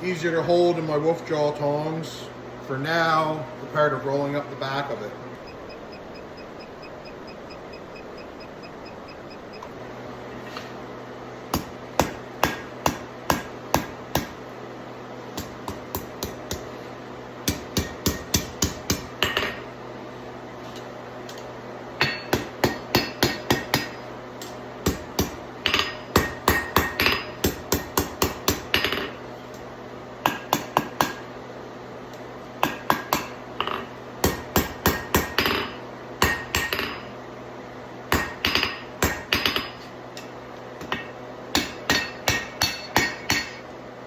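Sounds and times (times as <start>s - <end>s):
hammer striking steel on anvil: 11.5s - 14.4s, 15.4s - 16.7s, 17.4s - 19.7s, 21.3s - 29.6s, 30.2s - 31.3s, 32.6s - 37.1s, 38.1s - 43.7s.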